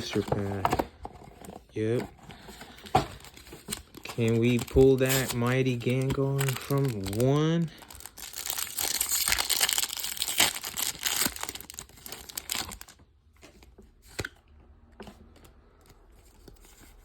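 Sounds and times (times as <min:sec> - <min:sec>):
foil wrapper crinkling and tearing: 0:01.8 - 0:13.0
soft rustles and clicks of cards: 0:13.3 - 0:17.0.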